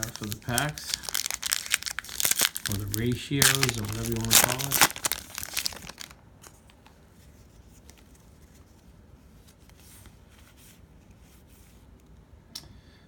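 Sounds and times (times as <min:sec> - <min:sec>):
cards rustling: 0:00.0 - 0:06.7.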